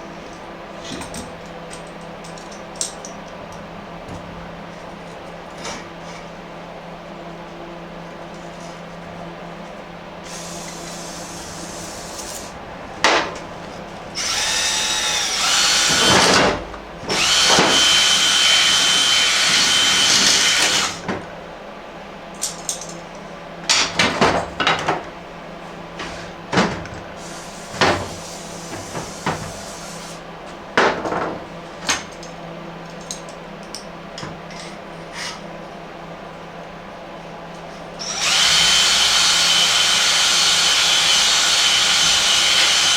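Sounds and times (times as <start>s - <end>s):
drill spinning a cylinder hone: 14.2s - 16.4s, 17.1s - 21.0s, 38.0s - 42.9s.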